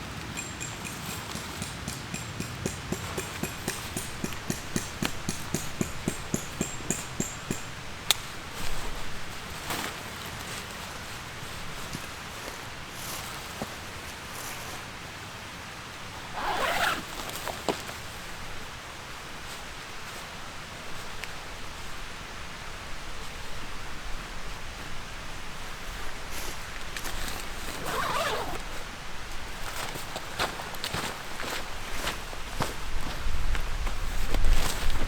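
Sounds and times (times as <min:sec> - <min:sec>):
steady background hiss: 0:00.0 - 0:35.0
zipper pulled: 0:16.4 - 0:17.4, 0:27.7 - 0:28.6.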